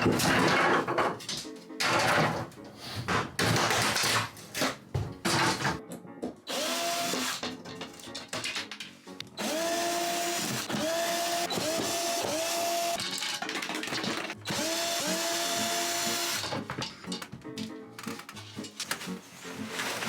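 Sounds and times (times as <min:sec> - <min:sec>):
cordless drill whining: 0:06.5 - 0:07.4, 0:09.4 - 0:13.0, 0:14.4 - 0:16.5.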